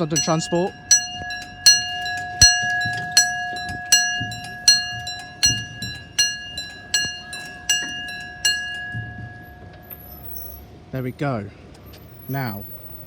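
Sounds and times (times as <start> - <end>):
level crossing alarm: 0.0 - 11.0.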